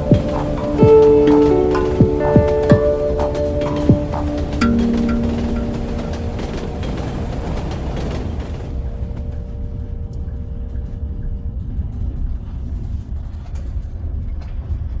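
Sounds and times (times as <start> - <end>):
held musical tone: 0.0 - 11.7
passenger train rumbling: 0.0 - 11.9.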